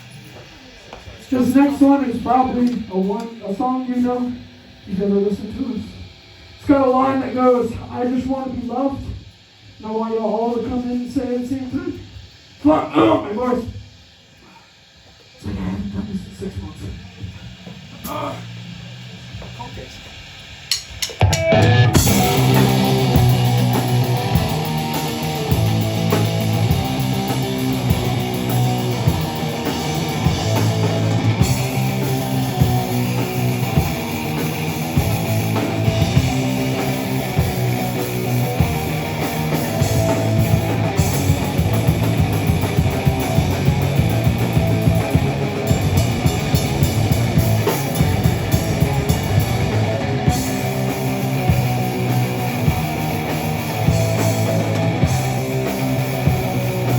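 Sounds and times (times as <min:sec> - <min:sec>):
live rock band playing: 0:21.2 - 0:56.9.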